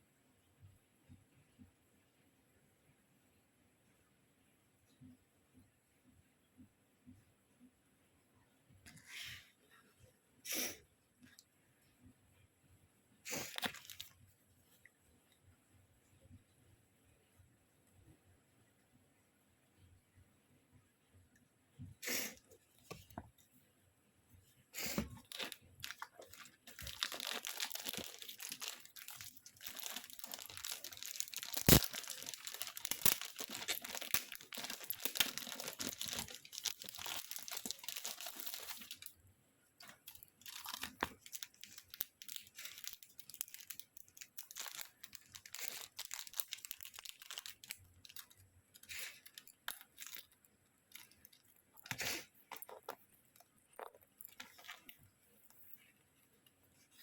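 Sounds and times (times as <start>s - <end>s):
packaging crinkling and tearing: 13.3s - 14.2s, 24.9s - 39.2s, 39.8s - 55.0s.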